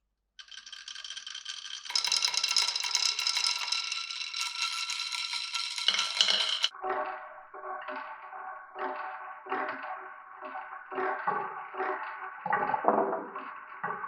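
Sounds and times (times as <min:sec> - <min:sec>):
glass marbles rolling and clattering: 0:00.4 - 0:06.7.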